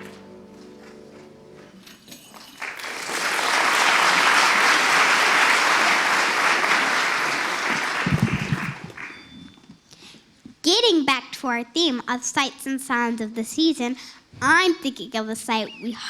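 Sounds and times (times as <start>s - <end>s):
sustained music chord: 0.0s - 2.1s
audience applause: 0.0s - 9.2s
low thumps: 8.1s - 9.0s.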